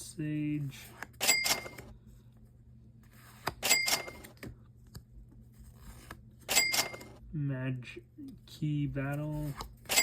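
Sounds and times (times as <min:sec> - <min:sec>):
cards rustling: 0:00.5 - 0:07.2, 0:08.8 - 0:10.0
cards sliding with scraping swish: 0:05.5 - 0:06.2.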